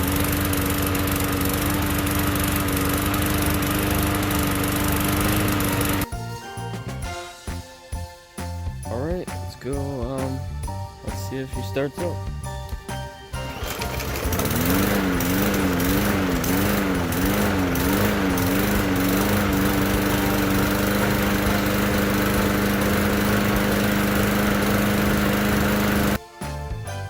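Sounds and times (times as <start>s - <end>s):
lawn mower engine running: 0.0s - 7.0s, 11.1s - 26.2s.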